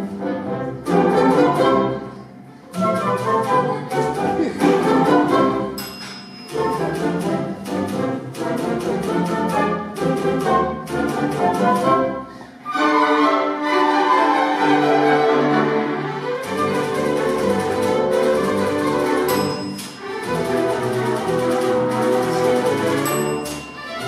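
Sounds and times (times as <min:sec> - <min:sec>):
orchestra playing: 0:00.0 - 0:24.0
typewriter bell ding: 0:05.8 - 0:06.8, 0:19.3 - 0:20.3, 0:22.3 - 0:24.0.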